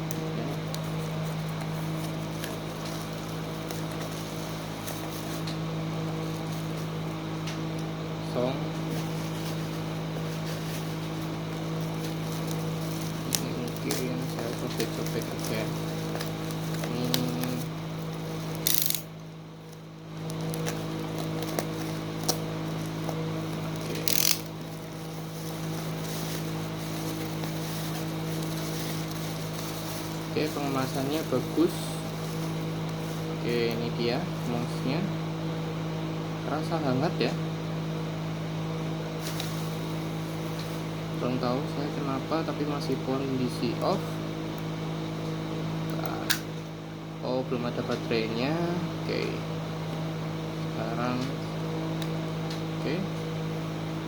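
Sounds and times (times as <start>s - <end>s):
steady low hum: 0.0s - 54.0s
small clicks and handling noises: 18.6s - 19.0s
packaging ripping: 23.5s - 32.6s.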